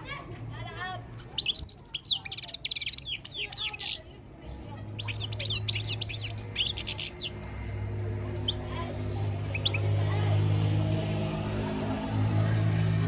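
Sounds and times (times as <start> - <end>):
bird twittering and chirping: 1.2 - 4.0, 5.0 - 7.6, 9.4 - 9.9.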